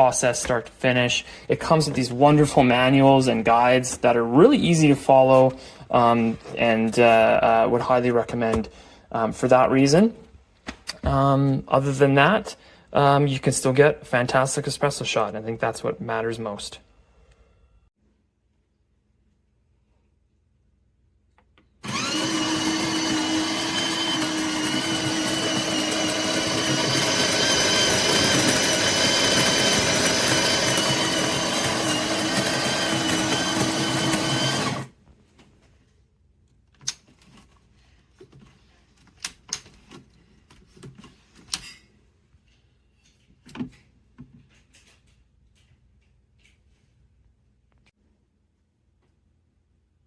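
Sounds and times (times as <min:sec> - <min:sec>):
coffee grinder whining: 0:21.8 - 0:35.0.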